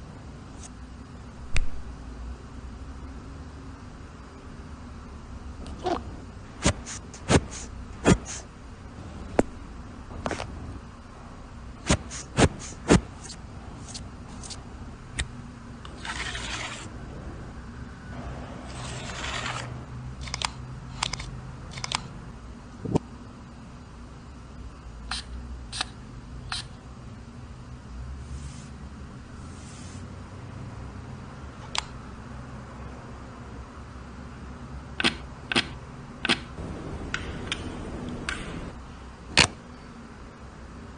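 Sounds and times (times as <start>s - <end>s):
scratchy brushing or scraping: 16.0s - 16.9s, 18.7s - 19.7s, 28.3s - 28.8s, 29.4s - 30.1s.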